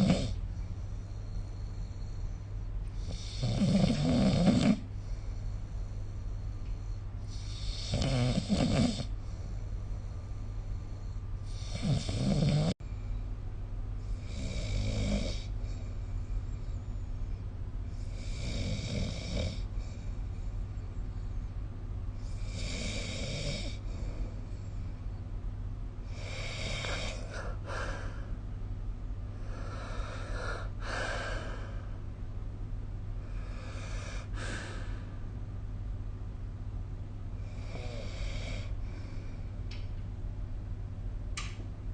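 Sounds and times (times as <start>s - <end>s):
person snoring: 0.0s - 0.4s, 3.0s - 4.9s, 7.3s - 9.1s, 11.5s - 12.8s, 18.0s - 19.7s, 22.2s - 23.8s, 26.1s - 28.2s
steady low hum: 0.0s - 41.9s.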